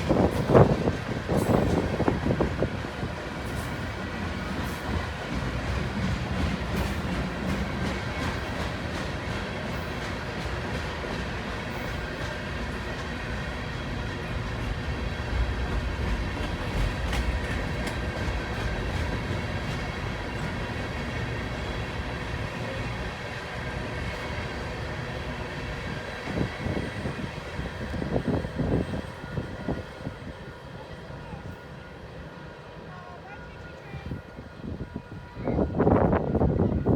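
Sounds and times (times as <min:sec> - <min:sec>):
low gusts: 0:00.0 - 0:11.7
train wheels rumbling on rail: 0:00.0 - 0:36.9.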